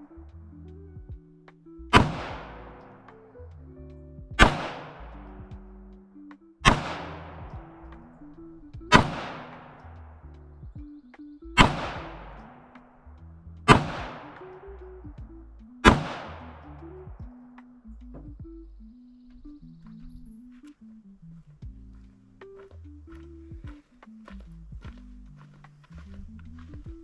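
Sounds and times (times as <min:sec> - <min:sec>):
background music: 0:00.0 - 0:27.0
pistol shots ringing out: 0:01.9 - 0:03.0, 0:04.4 - 0:05.0, 0:06.6 - 0:08.1, 0:08.9 - 0:09.9, 0:11.6 - 0:12.6, 0:13.7 - 0:14.6, 0:15.8 - 0:16.4.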